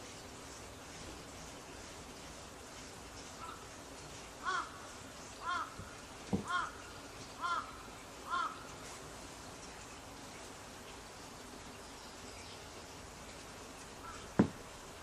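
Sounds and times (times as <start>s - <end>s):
soft thump: 14.4s - 14.6s.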